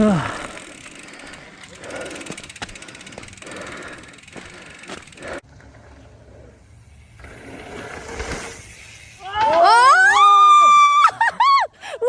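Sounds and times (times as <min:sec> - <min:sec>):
bike rattling and knocking: 0:00.0 - 0:05.5
mountain bike tyres on dirt: 0:00.0 - 0:11.0.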